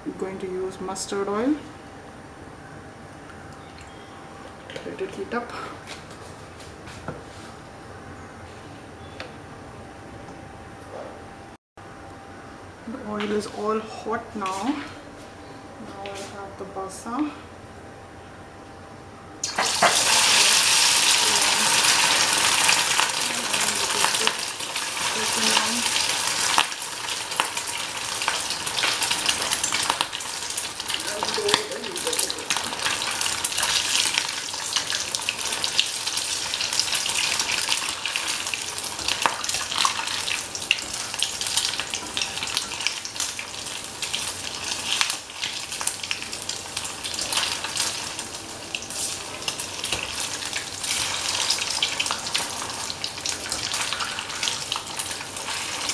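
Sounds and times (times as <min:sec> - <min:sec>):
fish sizzling in hot oil: 0:19.4 - 0:55.9.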